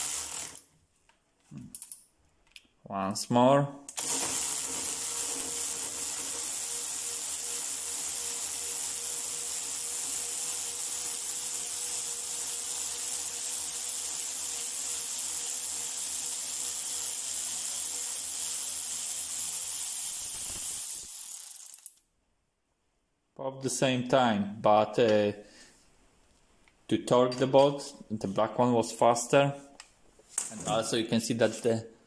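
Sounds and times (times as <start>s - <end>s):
cordless ratchet motor whirring: 0.0s - 0.7s, 3.9s - 22.0s.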